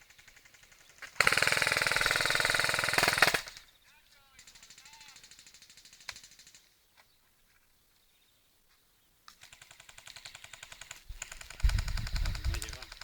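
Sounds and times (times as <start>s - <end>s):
airsoft guns firing full-auto: 0.0s - 3.7s, 4.4s - 6.7s, 9.4s - 13.0s.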